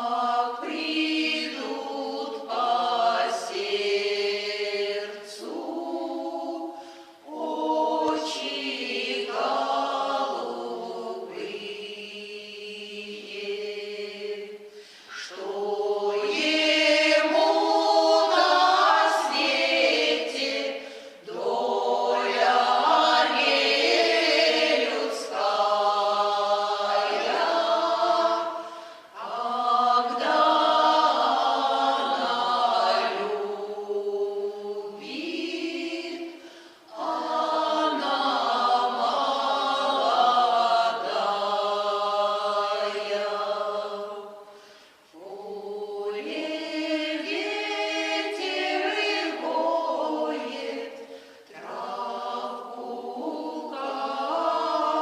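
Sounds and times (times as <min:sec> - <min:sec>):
choir singing a cappella: 0:00.0 - 0:55.0.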